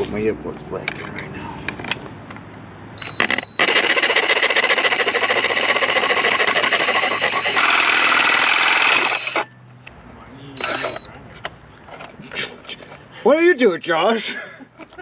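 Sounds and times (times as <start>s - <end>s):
reciprocating saw cutting steel: 3.6s - 9.5s.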